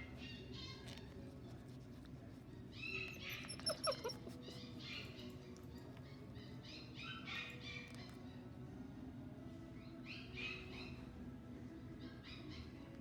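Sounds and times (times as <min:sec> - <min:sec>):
puppy whimpering and yipping: 0:03.1 - 0:04.6.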